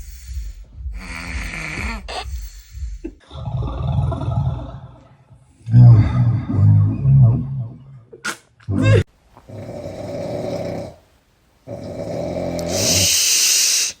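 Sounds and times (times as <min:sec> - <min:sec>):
pet snoring: 0:09.5 - 0:11.0, 0:11.7 - 0:13.9.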